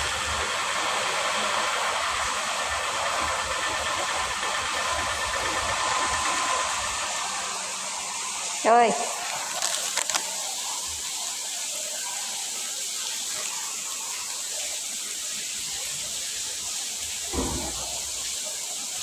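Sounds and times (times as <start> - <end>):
flowing water rushing: 0.0 - 19.0.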